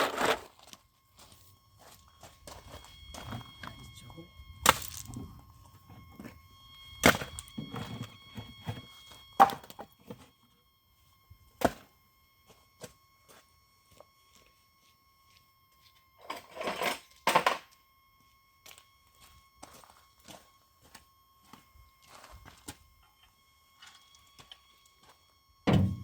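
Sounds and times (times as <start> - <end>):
faint steady motor whine: 0.0 - 26.0.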